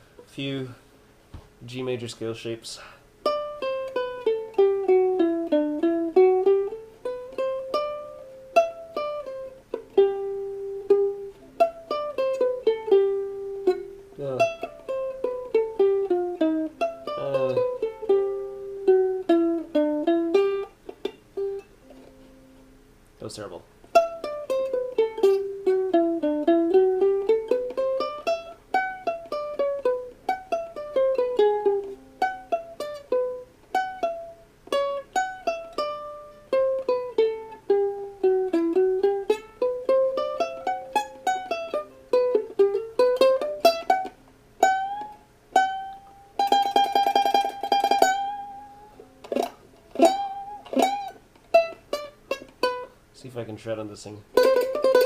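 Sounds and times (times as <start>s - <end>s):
ukulele playing scales: 3.2s - 22.8s, 23.8s - 55.0s.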